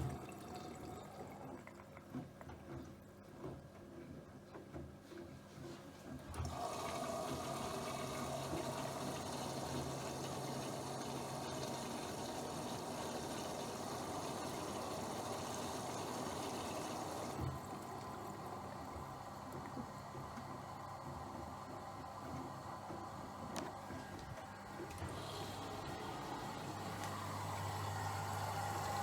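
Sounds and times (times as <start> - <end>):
washing machine water rushing: 0.0 - 3.7, 5.1 - 29.0.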